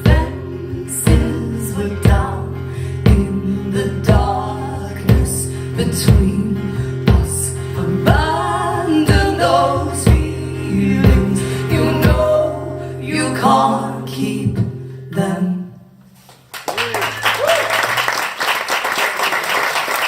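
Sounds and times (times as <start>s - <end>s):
person singing: 0.0s - 15.7s
live band music: 3.1s - 12.7s.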